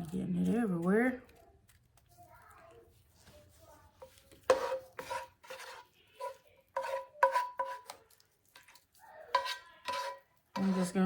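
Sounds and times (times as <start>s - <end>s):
utensil scraping a pan: 3.0s - 11.0s.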